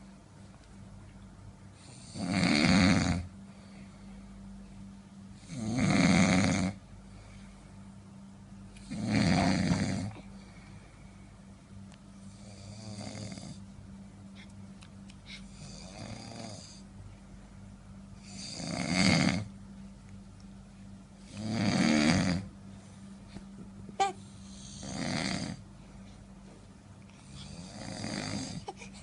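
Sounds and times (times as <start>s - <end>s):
steady low hum: 0.0s - 29.0s
man snoring loudly: 1.9s - 3.3s, 5.4s - 6.8s, 8.8s - 10.1s, 12.4s - 13.6s, 15.6s - 16.8s, 18.2s - 19.5s, 21.3s - 22.5s, 24.6s - 25.6s, 27.4s - 28.6s.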